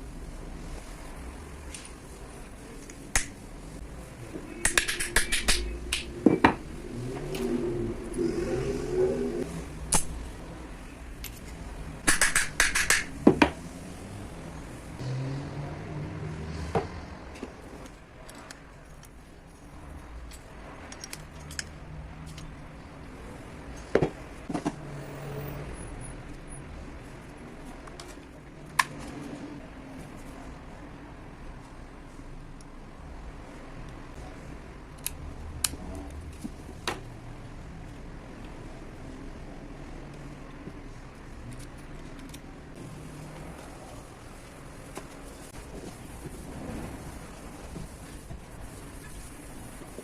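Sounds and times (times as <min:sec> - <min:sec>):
sharp clicks of small parts: 0:12.0 - 0:13.1, 0:20.2 - 0:22.6
sharp knocks of small parts: 0:12.0 - 0:13.5.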